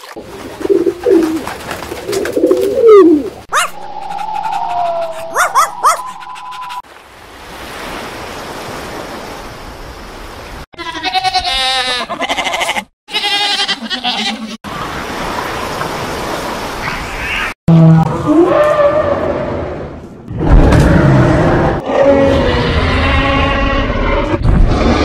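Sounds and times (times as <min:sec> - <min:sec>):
steady whistling tone: 0:03.5 - 0:06.8
quavering bleats: 0:10.8 - 0:14.6.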